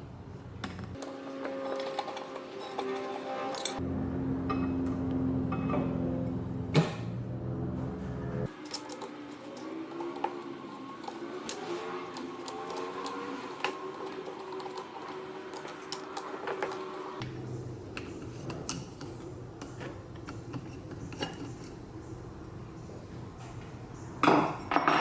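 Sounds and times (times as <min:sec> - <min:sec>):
low steady rumble: 0:03.8 - 0:08.5.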